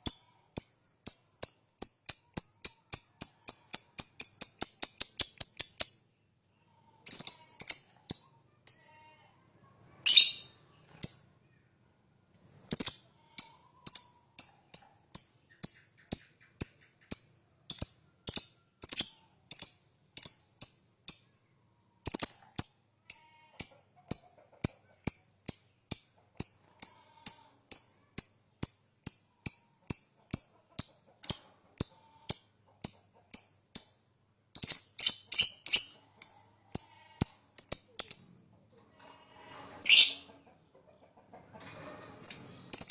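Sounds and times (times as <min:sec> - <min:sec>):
lovebird chirping: 0:00.0 - 0:06.0, 0:07.0 - 0:08.9, 0:10.0 - 0:11.4, 0:12.7 - 0:21.4, 0:22.0 - 0:34.0, 0:34.6 - 0:38.4, 0:39.8 - 0:40.3, 0:42.3 - 0:42.9.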